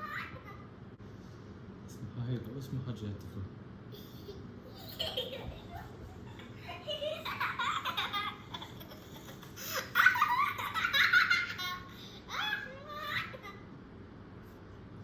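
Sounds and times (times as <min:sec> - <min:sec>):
baby laughing: 0:00.0 - 0:00.7, 0:04.0 - 0:13.6.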